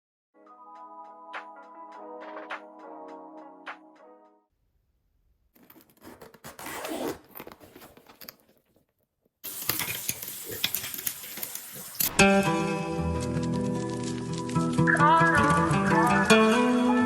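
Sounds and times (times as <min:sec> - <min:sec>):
rustling and scraping crackles: 0:05.6 - 0:12.1, 0:13.0 - 0:16.3
crackling hiss: 0:09.4 - 0:12.2.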